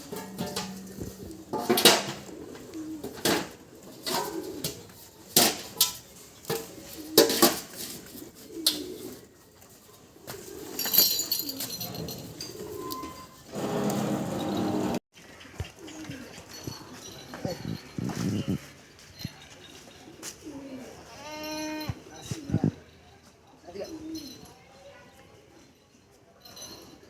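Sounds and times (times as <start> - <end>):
pigeons cooing: 0.0 - 15.0.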